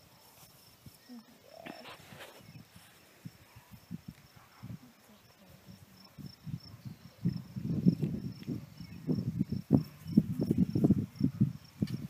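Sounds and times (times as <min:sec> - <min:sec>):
crickets chirping: 0:00.0 - 0:12.0.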